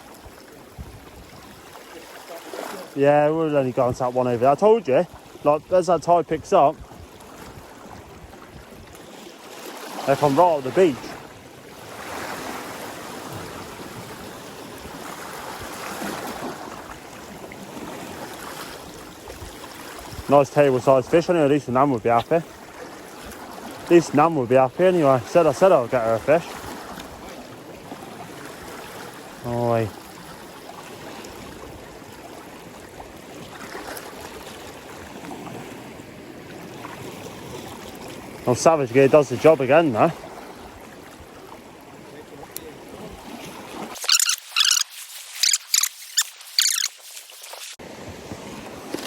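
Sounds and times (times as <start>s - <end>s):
sea water washing over rocks: 0.0s - 49.0s
water washing around rocks: 42.2s - 49.0s.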